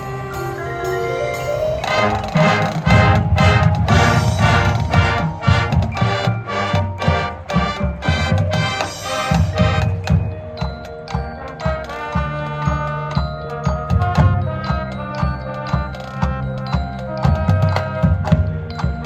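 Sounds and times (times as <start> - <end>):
marching band playing: 0.0 - 19.0
drum hits: 1.9 - 10.9.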